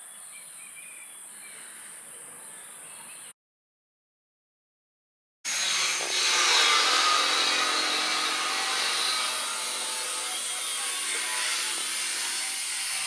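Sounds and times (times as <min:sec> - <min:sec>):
power tool running: 0:05.5 - 0:13.0.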